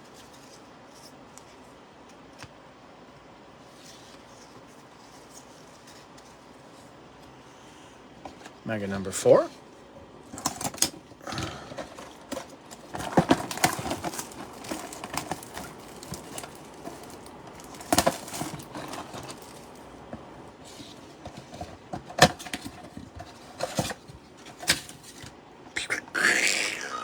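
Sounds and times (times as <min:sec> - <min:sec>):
cardboard and foil crinkling: 0:11.6 - 0:25.3.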